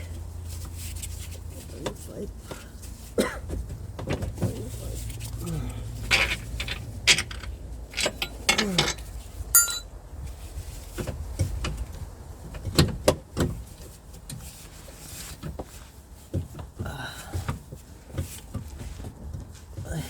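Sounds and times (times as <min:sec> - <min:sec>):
metal tools clinking and knocking: 0:06.0 - 0:09.9
ringing metal chink: 0:09.6 - 0:09.9.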